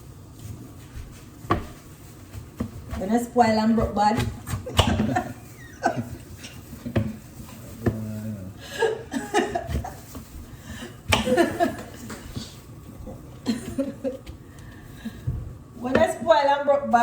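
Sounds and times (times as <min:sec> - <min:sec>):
laughter: 0:04.8 - 0:06.2, 0:08.6 - 0:10.0, 0:11.2 - 0:12.0, 0:13.4 - 0:14.2.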